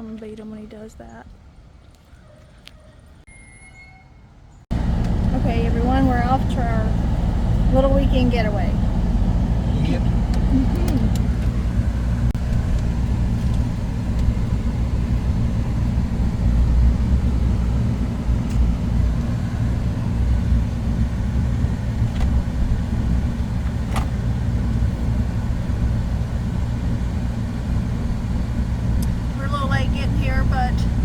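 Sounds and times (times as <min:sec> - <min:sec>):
truck road and engine rumble: 0:00.0 - 0:31.0.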